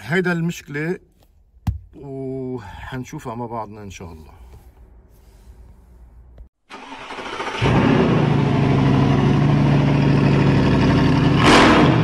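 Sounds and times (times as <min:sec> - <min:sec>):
vehicle engine running: 0:07.6 - 0:12.0.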